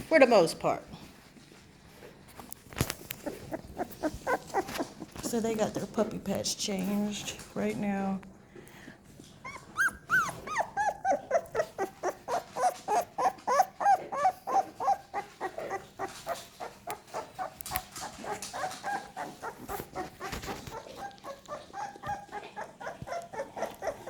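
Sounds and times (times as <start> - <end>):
puppies whimpering and squealing: 3.1 - 5.4, 9.4 - 24.0.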